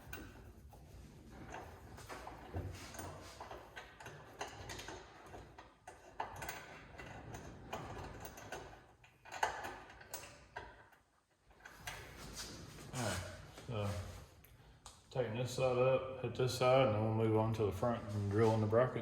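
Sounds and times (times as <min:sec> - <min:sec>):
bolts and hand tools clicking: 0:00.0 - 0:12.5.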